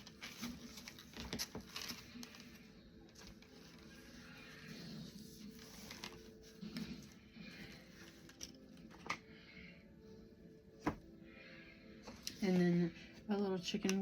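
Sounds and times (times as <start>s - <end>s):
packaging rustling and crinkling: 0.0s - 9.2s.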